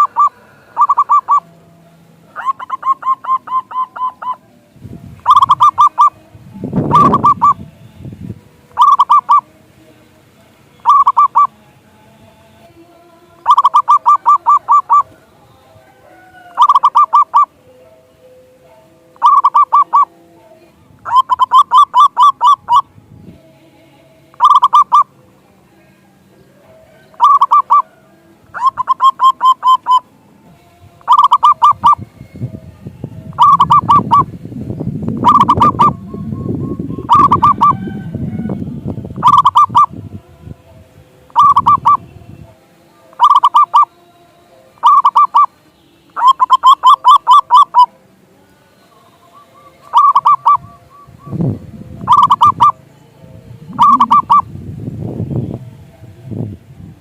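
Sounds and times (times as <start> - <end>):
dove cooing: 0.0 - 1.5, 2.3 - 4.4, 5.2 - 6.2, 6.8 - 7.6, 8.7 - 9.5, 10.8 - 11.5, 13.4 - 17.6, 19.2 - 20.1, 21.0 - 22.9, 24.3 - 25.2, 26.6 - 30.1, 31.0 - 32.0, 33.3 - 34.3, 35.2 - 38.6, 39.2 - 39.9, 41.3 - 42.0, 43.1 - 43.9, 44.8 - 45.6, 46.2 - 48.0, 49.2 - 54.5
low rumbling noise: 50.6 - 57.0.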